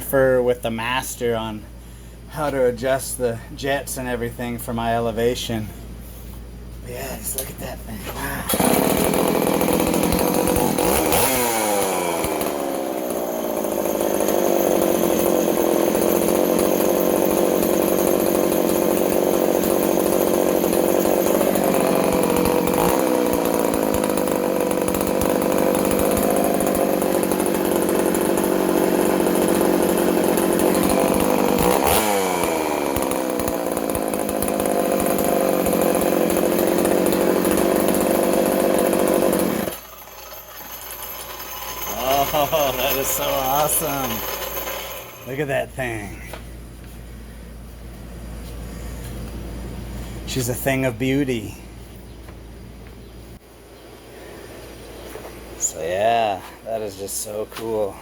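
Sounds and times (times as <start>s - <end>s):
chainsaw revving: 8.2s - 46.4s, 54.0s - 58.0s.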